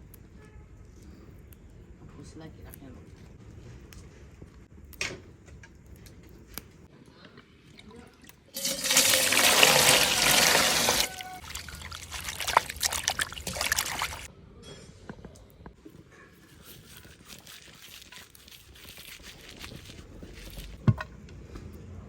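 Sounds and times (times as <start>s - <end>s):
water splashing and trickling: 7.5s - 14.3s, 16.6s - 20.9s
water pouring: 7.7s - 14.3s.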